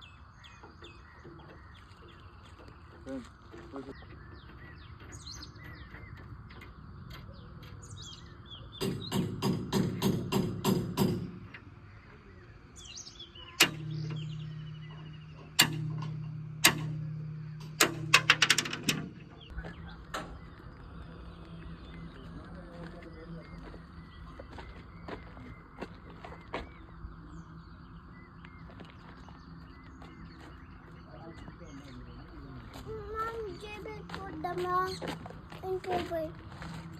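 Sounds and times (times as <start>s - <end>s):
birds chirping: 0.0s - 36.9s
bucket ringing with low hum: 4.0s - 24.4s.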